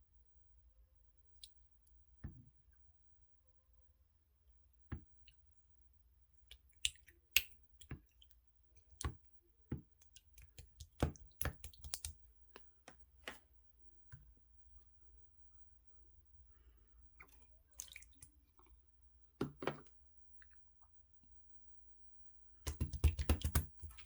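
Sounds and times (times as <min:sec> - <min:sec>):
slime clicking and popping: 0:10.0 - 0:12.2.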